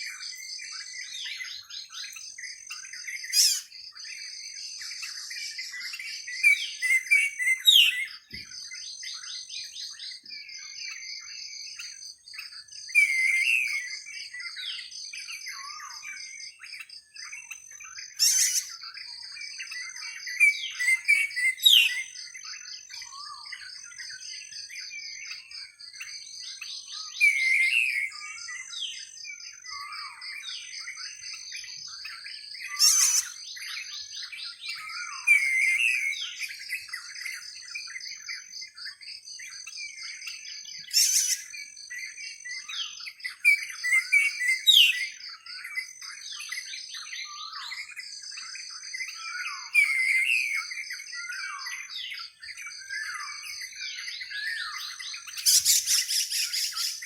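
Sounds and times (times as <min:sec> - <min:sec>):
birds chirping and calling: 0:00.0 - 0:57.0
high-pitched insect chorus: 0:00.0 - 0:57.0
sharp loud bird notes: 0:03.1 - 0:03.8, 0:18.1 - 0:18.9, 0:32.7 - 0:33.8, 0:40.8 - 0:41.6, 0:52.9 - 0:57.0
downward-sliding bird whistles: 0:40.9 - 0:41.4, 0:55.4 - 0:57.0.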